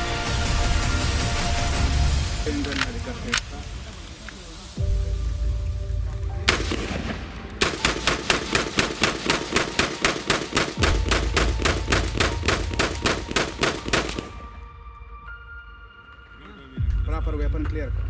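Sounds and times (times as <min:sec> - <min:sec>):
rifle gunshots: 0:02.5 - 0:04.0, 0:06.5 - 0:14.7.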